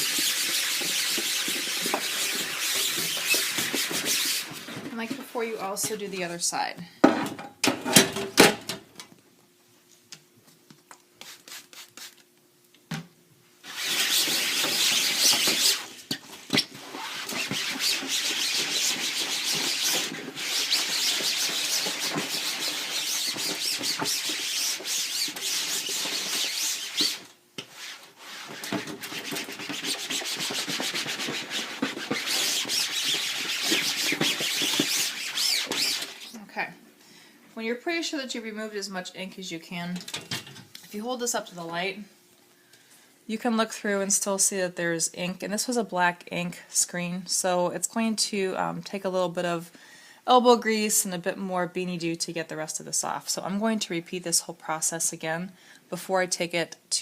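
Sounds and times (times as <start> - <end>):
damp cloth scrubbing mesh: 0.0 - 5.2, 13.6 - 36.4.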